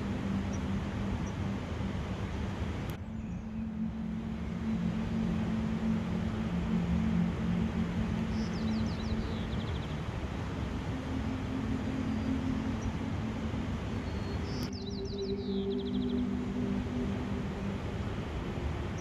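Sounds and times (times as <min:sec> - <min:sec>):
low hum: 0:00.0 - 0:19.0
steady rushing background: 0:00.0 - 0:19.0
songbird trilling: 0:14.0 - 0:17.0.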